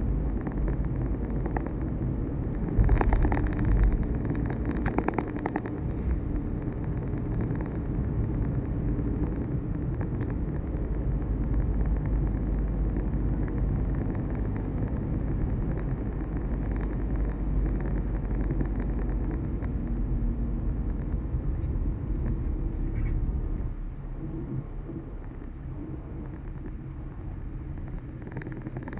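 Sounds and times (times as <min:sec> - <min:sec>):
vehicle engine and road rumble: 0:00.0 - 0:28.9.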